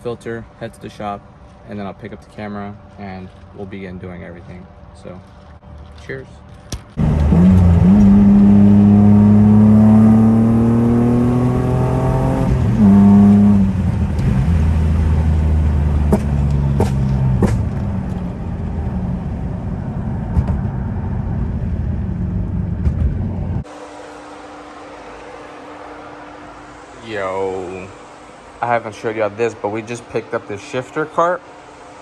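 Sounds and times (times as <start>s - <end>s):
car engine accelerating: 7.0s - 30.5s.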